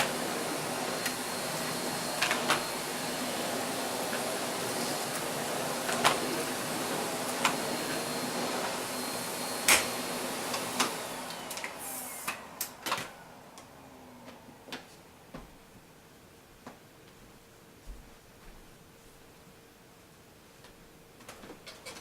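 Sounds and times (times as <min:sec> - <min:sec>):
vacuum cleaner running: 0:00.0 - 0:15.8.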